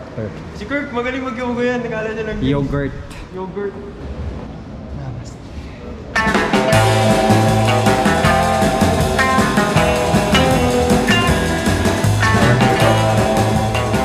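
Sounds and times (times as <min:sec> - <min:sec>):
upbeat rock music: 0:06.2 - 0:14.0.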